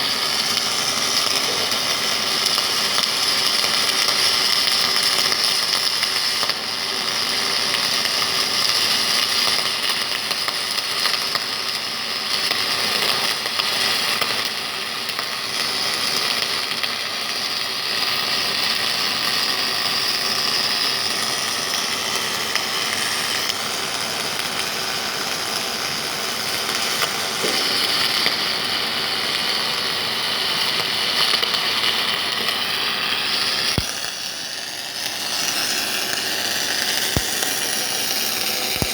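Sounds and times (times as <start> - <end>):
welding robot hissing: 27.4 - 28.7, 31.9 - 38.9
sharp click: 33.8 - 34.1.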